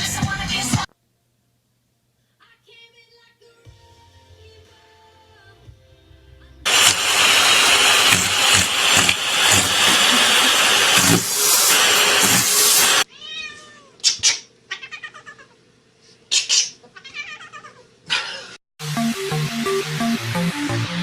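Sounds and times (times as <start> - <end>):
music: 0.0 - 0.9, 2.7 - 6.7, 18.8 - 21.0.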